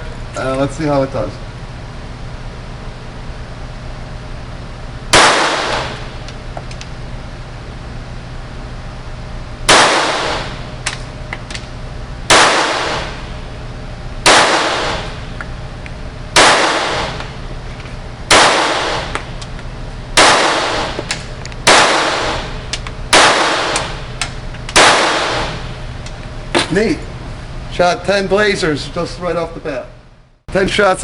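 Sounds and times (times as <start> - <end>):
pistol shots with echo: 5.1 - 6.1, 9.7 - 10.6, 12.3 - 13.2, 14.2 - 15.2, 16.4 - 17.2, 18.3 - 19.2, 20.2 - 21.1, 21.7 - 24.0, 24.8 - 25.7.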